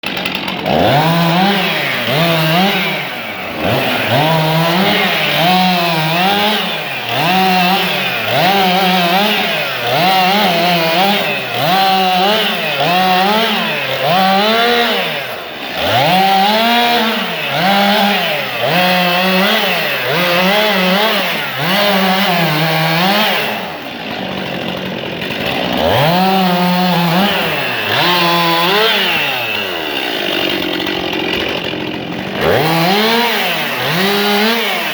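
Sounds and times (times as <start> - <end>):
chainsaw running hard: 0.0 - 34.9.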